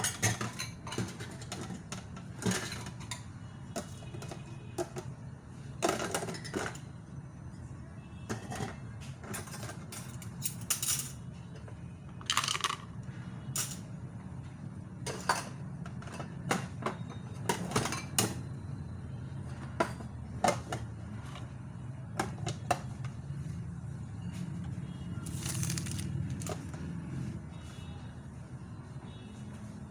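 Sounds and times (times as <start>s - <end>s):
dishes and cutlery clattering: 0.0s - 5.1s, 5.8s - 6.8s, 8.3s - 11.2s, 15.0s - 18.4s.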